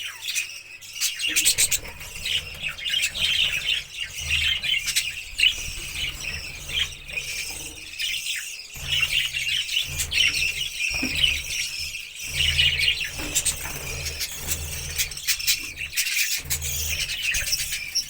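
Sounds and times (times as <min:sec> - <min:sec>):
parrots chirping and squealing: 0:00.0 - 0:18.0.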